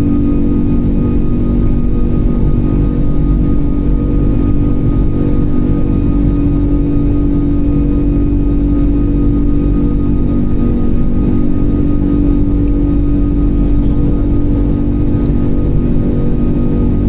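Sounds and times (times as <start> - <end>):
airplane cabin engine drone: 0.0 - 17.0.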